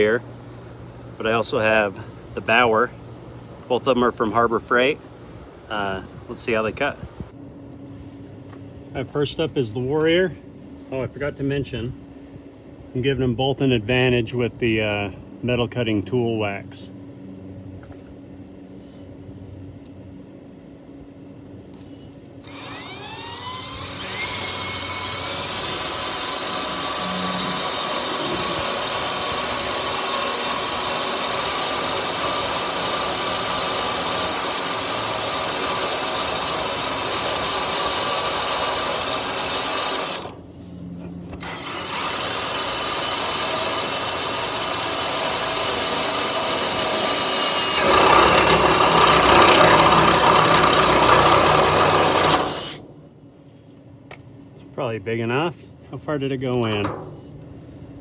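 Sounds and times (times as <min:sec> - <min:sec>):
power drill cutting metal: 0:22.4 - 0:40.4, 0:41.4 - 0:52.8.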